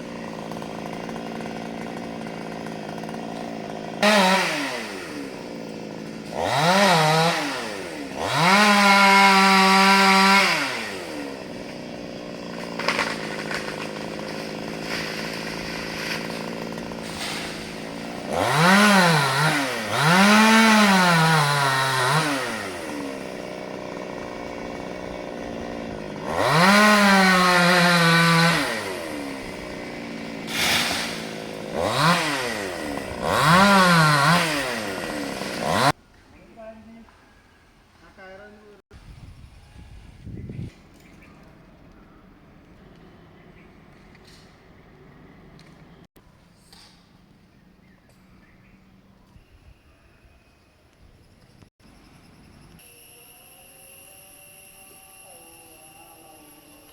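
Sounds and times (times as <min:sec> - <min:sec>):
chainsaw revving and idling: 0:00.0 - 0:36.0.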